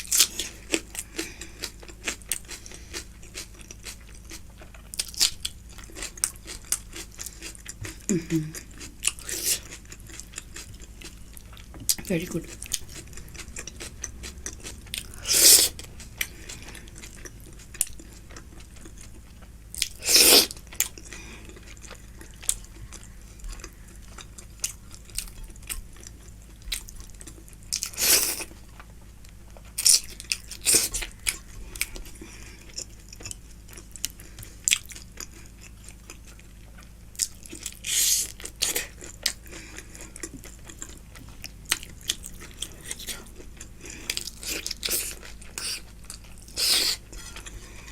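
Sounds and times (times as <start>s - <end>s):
chewing food: 0.0s - 47.9s.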